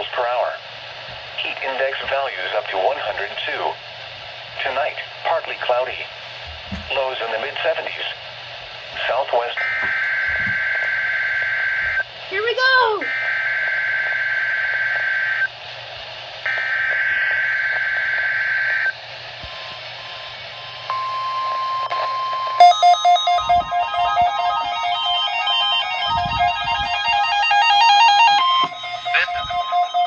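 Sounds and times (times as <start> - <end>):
steady warning alarm tone: 9.0 - 12.0, 22.6 - 30.0
two-tone data screech: 9.6 - 11.0, 23.4 - 30.0
electronic beeping jingle: 22.6 - 30.0.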